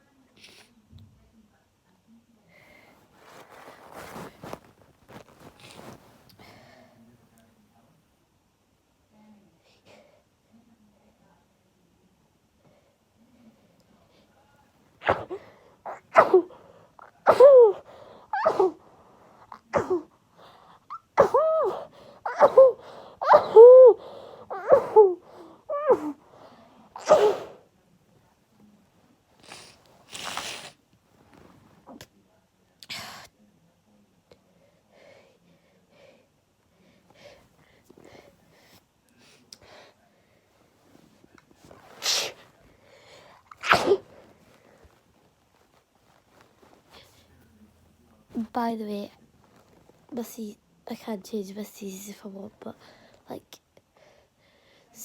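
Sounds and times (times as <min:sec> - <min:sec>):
quiet breaths: 0:00.0 - 0:08.1, 0:09.0 - 0:55.0
person breathing and sniffing: 0:02.6 - 0:06.8, 0:29.4 - 0:30.8
girl sneezing: 0:15.0 - 0:16.6, 0:17.2 - 0:18.9, 0:19.5 - 0:20.2, 0:20.9 - 0:26.2, 0:27.0 - 0:27.6, 0:42.0 - 0:42.4, 0:43.5 - 0:44.2.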